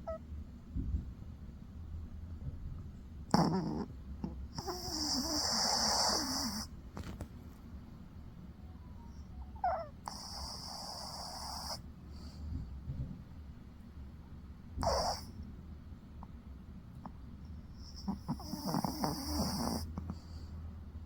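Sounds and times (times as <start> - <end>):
dog snoring: 3.3 - 6.7, 9.6 - 12.4, 14.8 - 15.3, 17.0 - 20.5.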